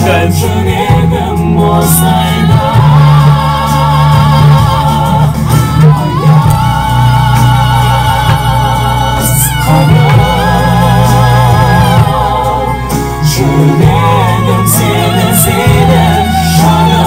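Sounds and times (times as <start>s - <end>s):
instrumental backing: 0.0s - 17.0s
man singing with vibrato: 0.0s - 17.0s.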